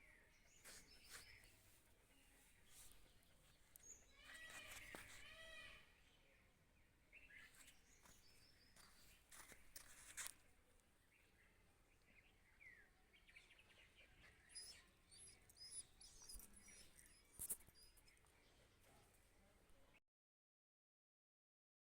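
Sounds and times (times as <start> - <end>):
faint high bird chirps: 0.0 - 5.9, 12.2 - 18.7.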